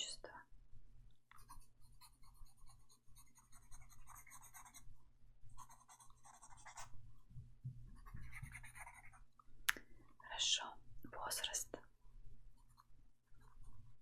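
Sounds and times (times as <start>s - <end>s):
pen scratching on paper: 1.4s - 4.8s, 5.6s - 6.9s, 8.0s - 9.2s.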